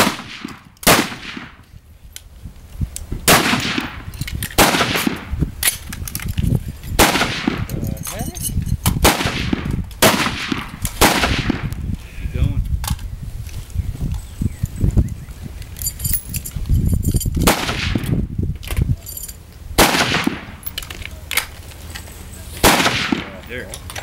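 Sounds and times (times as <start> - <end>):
distant rifle shots: 0.0 - 1.6, 3.3 - 5.3, 7.0 - 7.7, 9.0 - 11.7, 17.4 - 18.1, 19.8 - 20.6, 22.6 - 23.4
rifle shots with echo: 0.0 - 1.6, 3.3 - 5.3, 7.0 - 7.7, 9.0 - 11.7, 17.4 - 18.1, 19.8 - 20.6, 22.6 - 23.4.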